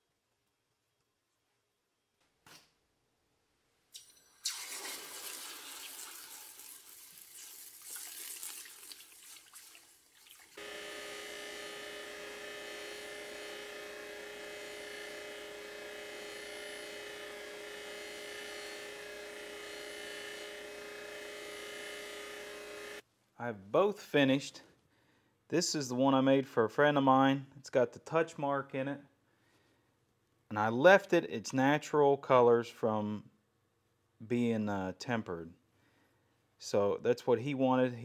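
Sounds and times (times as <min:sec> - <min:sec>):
power tool motor whining: 0:10.6 - 0:23.0.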